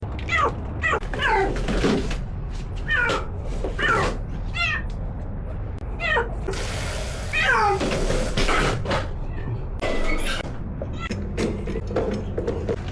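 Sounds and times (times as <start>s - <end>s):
cat meowing: 0.2s - 1.6s, 2.9s - 4.9s, 5.9s - 6.5s, 7.3s - 7.8s.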